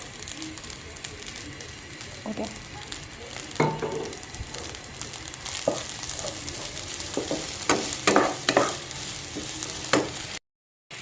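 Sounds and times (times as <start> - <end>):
rice sizzling in a pan: 0.0 - 11.0
spatula scraping a pan: 5.5 - 10.4.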